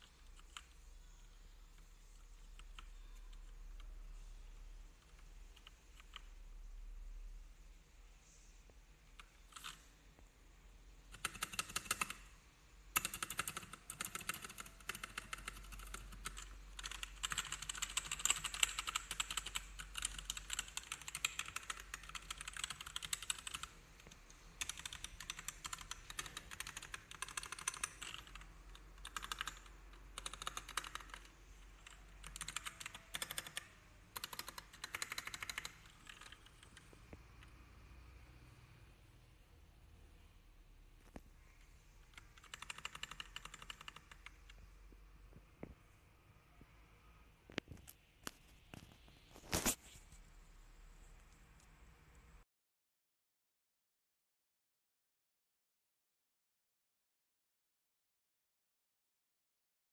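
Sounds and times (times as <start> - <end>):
mechanical keyboard typing: 0.0 - 0.8, 1.7 - 3.9, 5.0 - 6.4, 9.2 - 9.9, 11.1 - 12.3, 12.9 - 37.5, 42.0 - 44.7.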